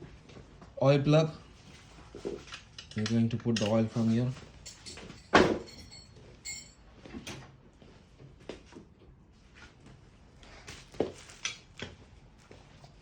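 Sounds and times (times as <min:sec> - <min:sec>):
tools knocking and clicking: 0:02.4 - 0:04.1, 0:04.7 - 0:06.7.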